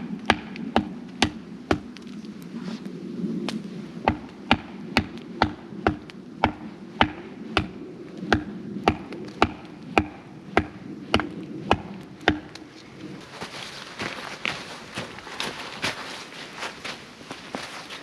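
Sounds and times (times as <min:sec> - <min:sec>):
blade chopping wood: 0:00.3 - 0:01.8, 0:04.1 - 0:07.7, 0:08.3 - 0:12.6
soft rustling: 0:12.7 - 0:18.0.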